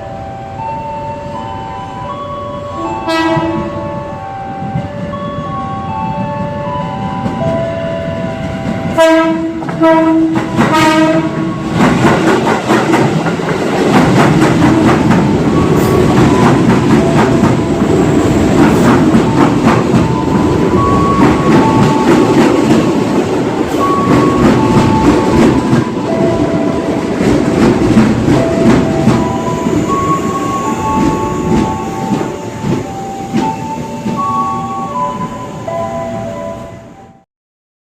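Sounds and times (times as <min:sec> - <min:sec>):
train horn blasts: 0:02.8 - 0:04.2, 0:08.9 - 0:11.7
train wheels clattering over rail joints: 0:11.7 - 0:20.4.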